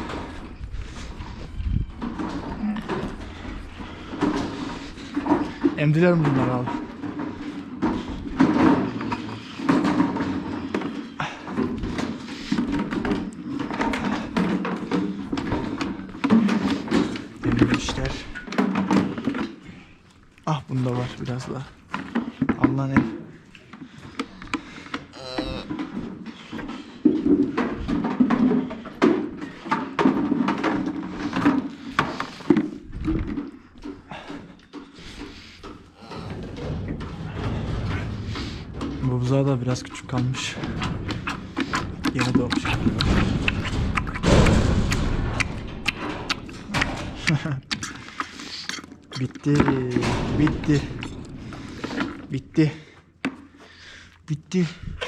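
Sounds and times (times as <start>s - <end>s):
plastic buckets knocking: 0.0s - 55.0s
calves slurping and sucking milk: 39.9s - 49.9s, 50.6s - 52.4s.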